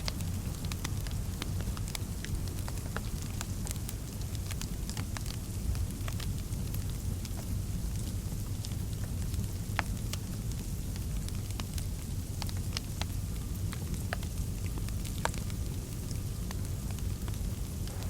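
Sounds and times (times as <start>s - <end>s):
wood fire crackling: 0.0s - 18.0s
low rumble: 17.0s - 18.0s.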